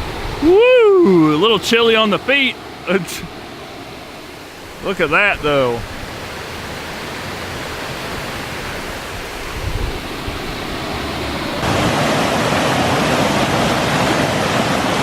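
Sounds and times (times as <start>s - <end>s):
waterfall rushing: 0.0s - 15.0s.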